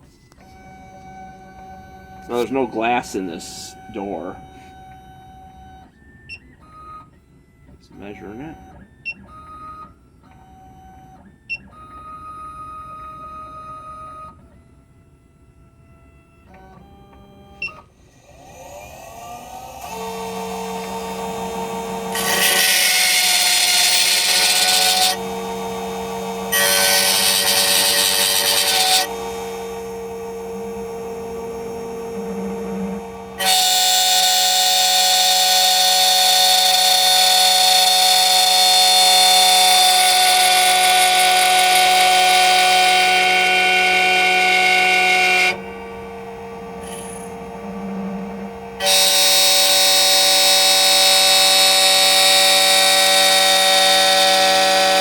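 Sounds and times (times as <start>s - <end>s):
spindle motor whine: 0.0s - 55.0s
cutter milling a key blank: 0.3s - 4.9s, 16.5s - 55.0s.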